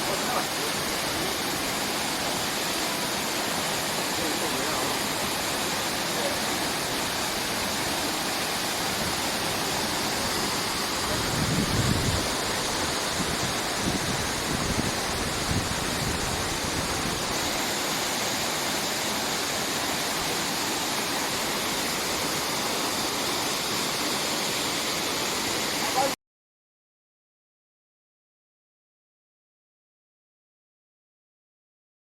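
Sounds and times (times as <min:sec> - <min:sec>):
waterfall rushing: 0:00.0 - 0:26.2.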